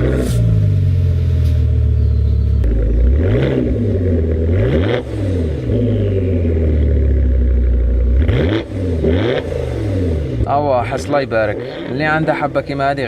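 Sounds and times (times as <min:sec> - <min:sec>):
car engine idling and revving: 0:00.0 - 0:13.0.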